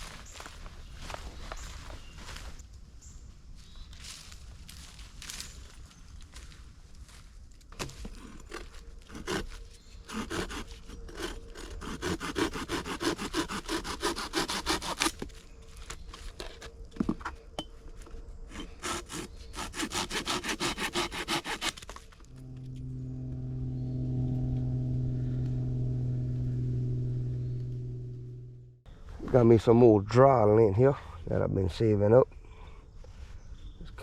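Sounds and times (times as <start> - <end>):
hand saw cutting branch: 7.8 - 15.3, 18.5 - 22.9.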